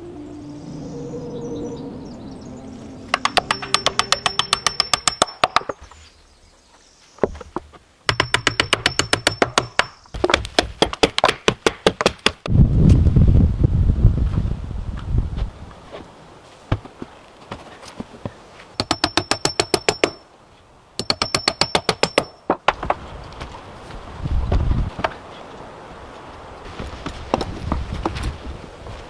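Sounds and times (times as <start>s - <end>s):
wind buffeting microphone: 0.0s - 4.5s, 12.4s - 16.8s, 22.8s - 29.0s
rapid evenly spaced knocking: 3.2s - 5.7s.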